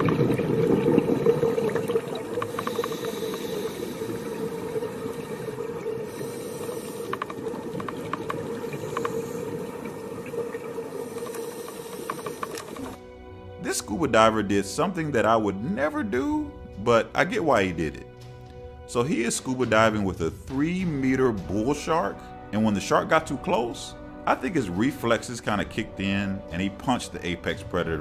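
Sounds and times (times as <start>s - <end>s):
underwater hum and hiss: 0.0s - 13.0s
faint clicks: 2.3s - 4.2s, 6.6s - 9.9s, 11.0s - 13.0s.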